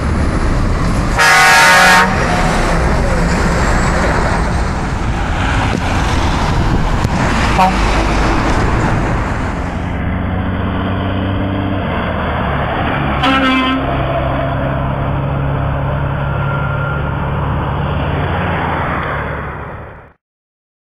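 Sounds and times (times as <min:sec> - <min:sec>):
truck diesel engine droning: 0:00.0 - 0:20.2
truck air horn blast: 0:01.2 - 0:02.7, 0:07.4 - 0:08.4, 0:13.2 - 0:14.3.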